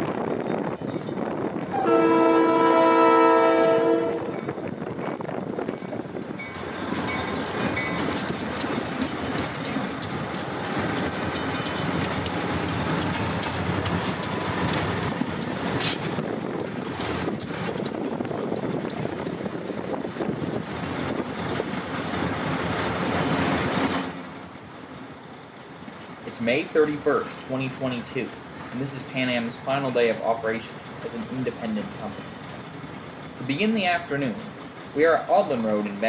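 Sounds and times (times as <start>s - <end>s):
freight train wheels clicking on rails: 4.0s - 36.0s
faint high wheel squeal: 9.1s - 17.9s.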